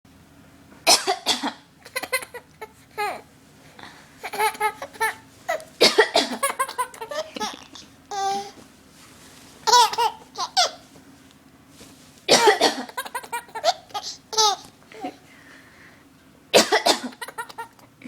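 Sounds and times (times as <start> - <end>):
woman coughing: 0.9 - 1.6, 5.8 - 7.7, 12.3 - 13.0, 16.5 - 17.2
baby laughing: 1.8 - 3.3, 4.2 - 8.6, 9.7 - 10.8, 12.4 - 15.2, 17.1 - 17.8.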